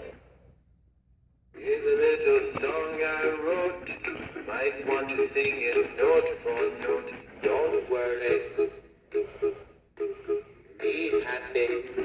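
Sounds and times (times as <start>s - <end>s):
tinny male vocal over music: 1.6s - 8.8s, 10.3s - 12.0s.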